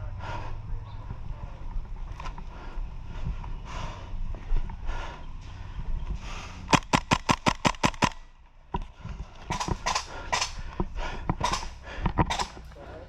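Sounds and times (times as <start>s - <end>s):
airsoft gun shots: 6.7s - 8.3s, 9.5s - 10.6s, 11.4s - 12.6s.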